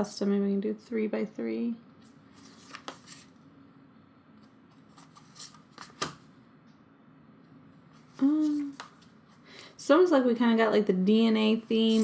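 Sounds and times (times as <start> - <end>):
photo cards clicking and rustling: 2.4 - 3.3, 5.0 - 6.2.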